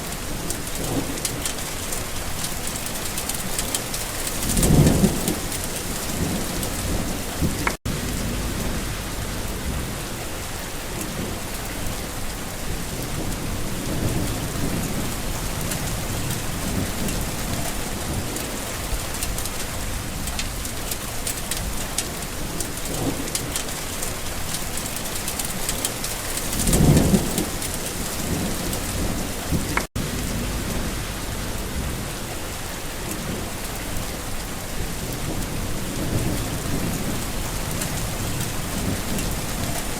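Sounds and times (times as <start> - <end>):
steady rain falling: 0.0 - 39.9
thunder rumbling: 4.1 - 12.0, 12.6 - 20.7, 25.7 - 39.9.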